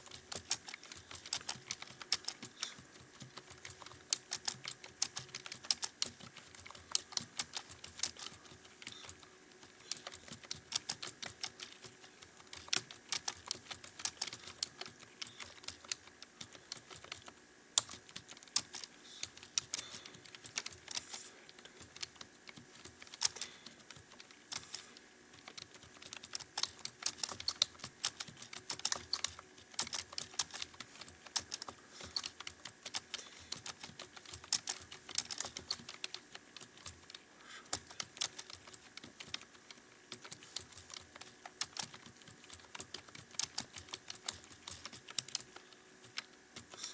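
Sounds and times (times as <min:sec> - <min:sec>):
fast keyboard typing: 0:00.0 - 0:46.9.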